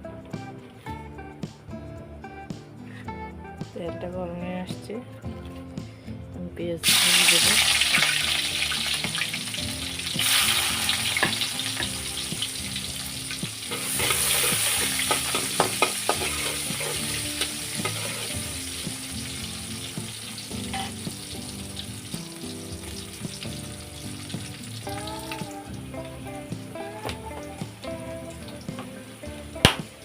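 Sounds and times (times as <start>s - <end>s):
onions sizzling in oil: 6.8s - 30.0s
spatula clicking against pan: 13.7s - 16.5s.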